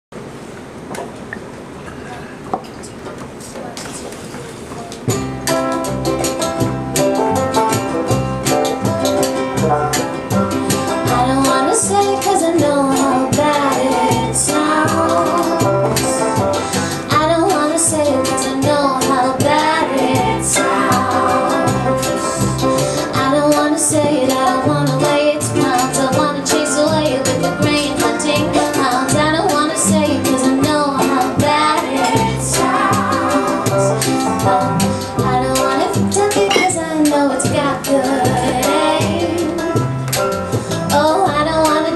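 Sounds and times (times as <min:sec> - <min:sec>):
bass: 0:05.0 - 0:41.9
ukulele or banjo: 0:05.1 - 0:41.9
women singing in harmony: 0:11.1 - 0:16.2, 0:17.1 - 0:39.6.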